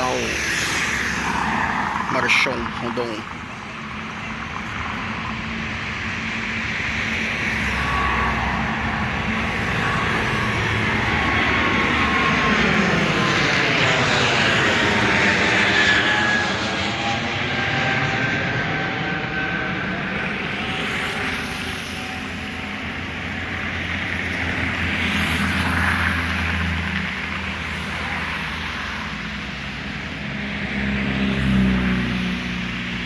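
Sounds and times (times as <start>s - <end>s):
jet engines roaring on takeoff: 0.0s - 33.0s.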